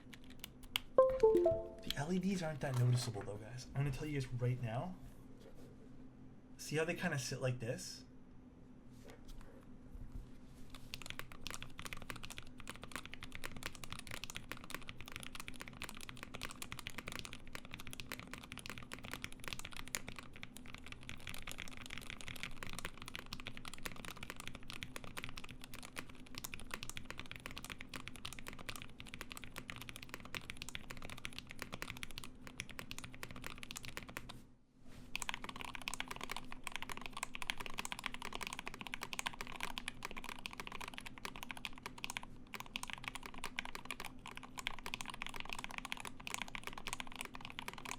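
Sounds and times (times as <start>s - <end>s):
mechanical keyboard typing: 0.0s - 2.0s, 10.9s - 34.4s, 35.2s - 47.9s.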